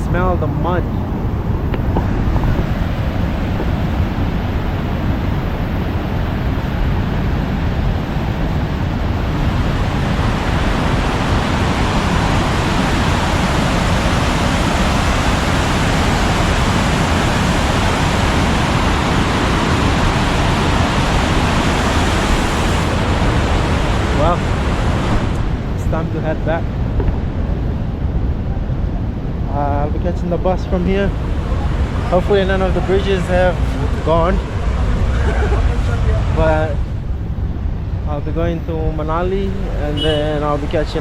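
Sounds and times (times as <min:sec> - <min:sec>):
river rushing: 0:00.0 - 0:28.0, 0:30.3 - 0:38.0.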